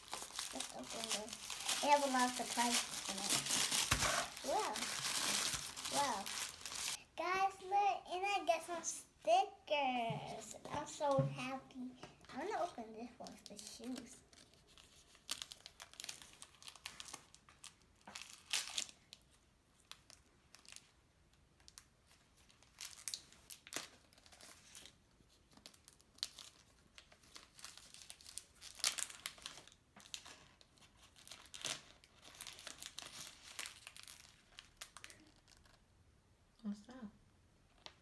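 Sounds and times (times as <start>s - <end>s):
plastic packaging crinkling and tearing: 0.0s - 7.0s, 12.3s - 21.0s, 21.6s - 35.9s.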